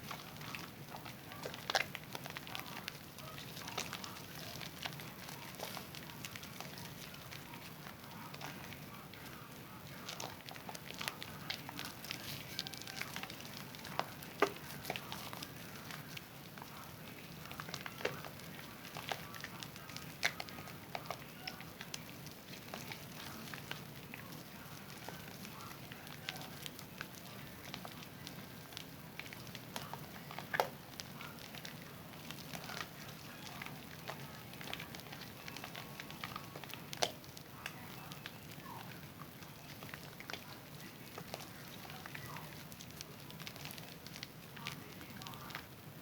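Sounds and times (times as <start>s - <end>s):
wet clicks and pops: 9.9s - 45.7s.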